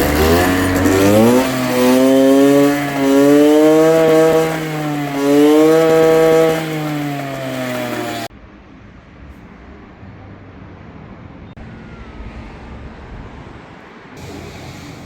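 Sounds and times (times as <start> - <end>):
motorcycle engine revving: 0.0 - 8.3.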